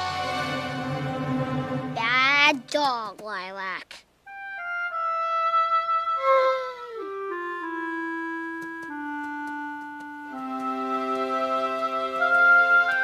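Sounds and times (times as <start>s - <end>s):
slow woodwind melody: 4.2s - 13.0s.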